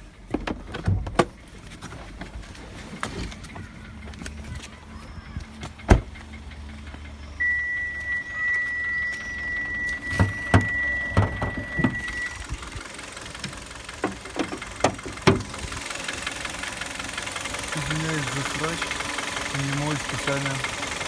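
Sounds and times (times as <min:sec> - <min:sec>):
car engine idling: 0:00.0 - 0:21.0
high electronic warning tone: 0:07.2 - 0:12.6
sharp thumps and clicks: 0:10.2 - 0:15.7.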